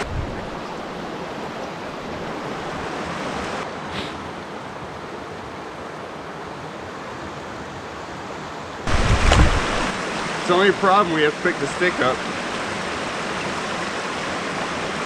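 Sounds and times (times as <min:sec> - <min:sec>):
fast-flowing creek rushing: 0:00.0 - 0:15.0.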